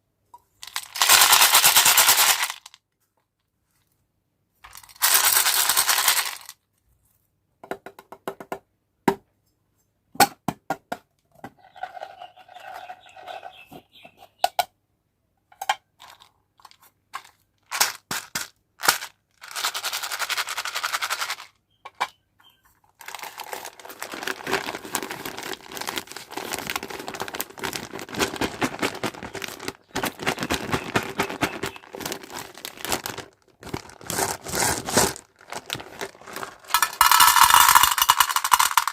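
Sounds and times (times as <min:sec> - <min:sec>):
hard candies pouring and rattling: 0:00.6 - 0:02.7, 0:04.7 - 0:06.5, 0:16.0 - 0:21.5, 0:23.0 - 0:38.9
plastic wrappers crinkling and tearing: 0:23.0 - 0:37.0.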